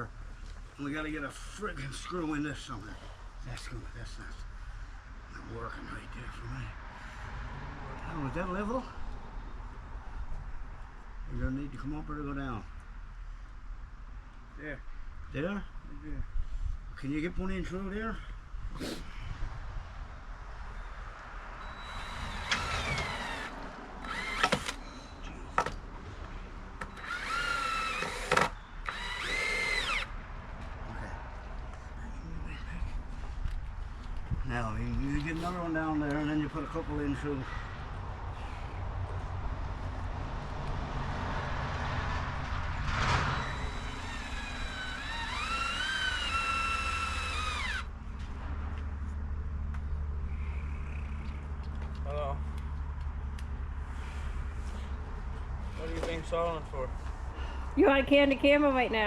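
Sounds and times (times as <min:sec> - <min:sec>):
power drill driving screws: 0:21.6 - 0:24.8, 0:26.8 - 0:30.1, 0:43.3 - 0:47.9.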